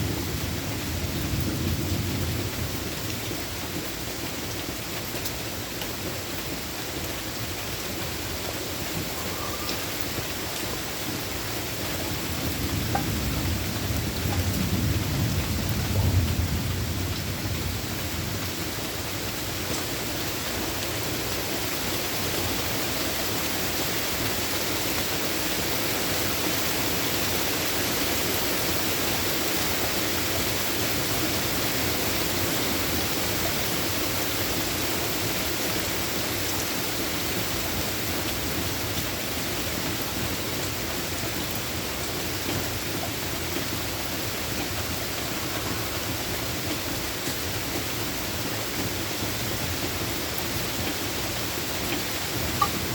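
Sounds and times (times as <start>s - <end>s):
steady rain falling: 0.0s - 52.9s
thunder rumble: 12.1s - 18.8s.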